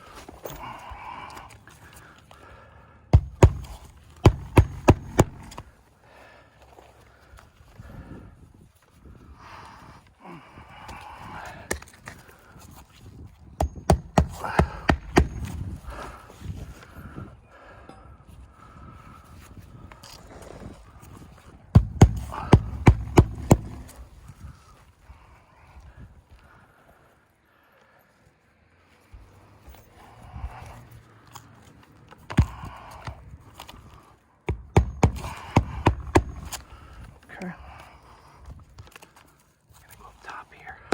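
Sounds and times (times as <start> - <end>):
hammer striking nails: 3.1 - 5.7, 13.6 - 15.6, 21.7 - 24.0, 34.5 - 36.6
shingles rustling and scraping: 3.2 - 5.8.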